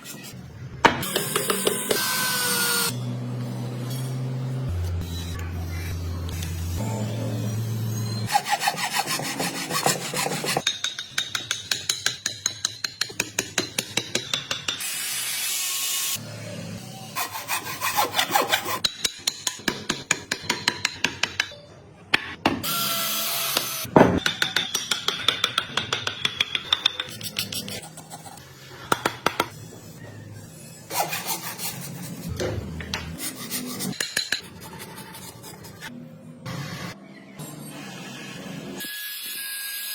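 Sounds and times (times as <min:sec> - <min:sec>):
hand tools rasping wood: 0:08.3 - 0:10.6.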